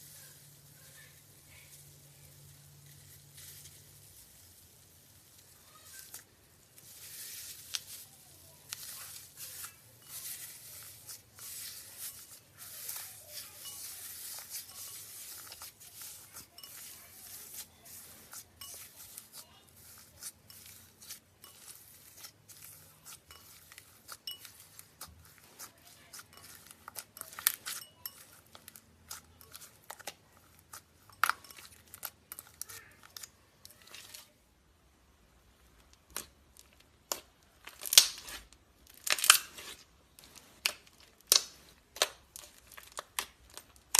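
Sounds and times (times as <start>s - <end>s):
slime crinkling and crackling: 0.0s - 34.3s, 35.7s - 43.9s.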